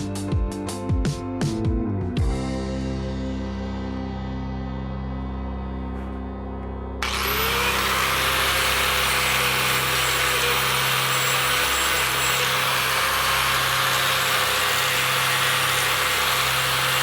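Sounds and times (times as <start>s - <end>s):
rotary grinder grinding metal: 7.0s - 17.0s.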